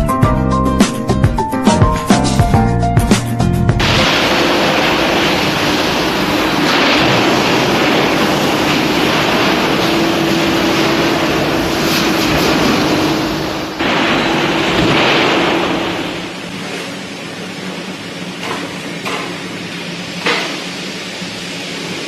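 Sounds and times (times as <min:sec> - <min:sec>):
factory machinery rushing noise: 0:03.8 - 0:22.0.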